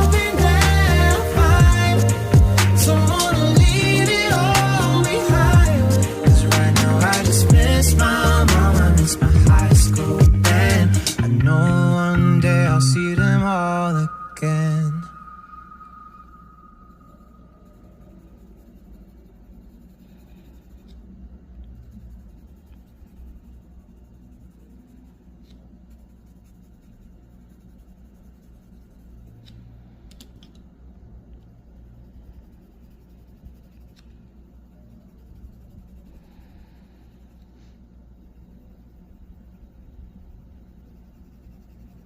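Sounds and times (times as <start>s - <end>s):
colored pencil scratching on paper: 17.6s - 29.5s, 31.7s - 42.0s.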